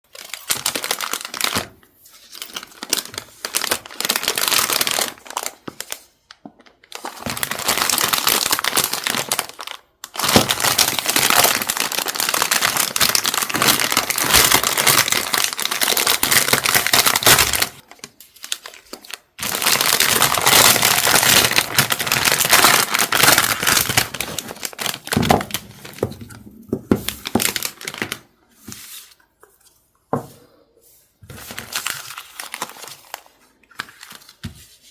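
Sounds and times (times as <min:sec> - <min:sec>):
packaging tearing: 0:00.1 - 0:06.0, 0:06.9 - 0:26.0, 0:31.4 - 0:34.4
packaging crinkling and rustling: 0:00.1 - 0:29.4, 0:31.2 - 0:34.9.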